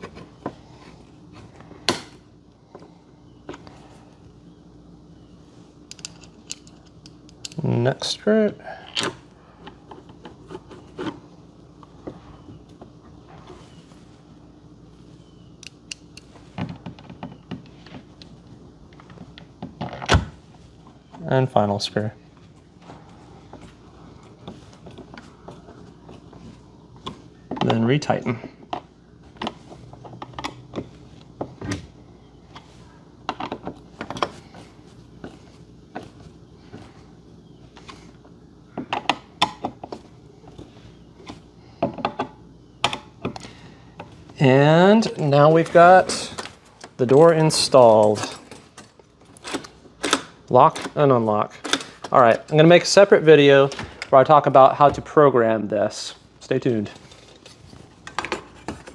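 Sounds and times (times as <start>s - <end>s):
lock parts clicking and knocking: 45.2s - 51.0s.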